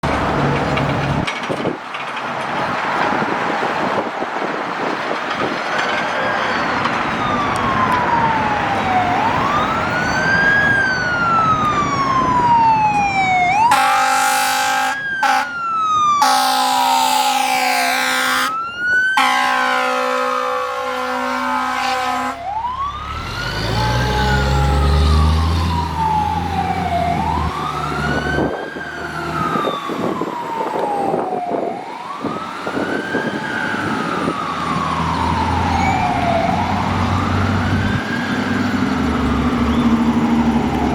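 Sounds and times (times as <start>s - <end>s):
heavy truck engine: 0.0s - 31.6s, 32.2s - 40.9s
siren wailing: 6.0s - 40.9s
fire truck air horn: 13.6s - 24.8s.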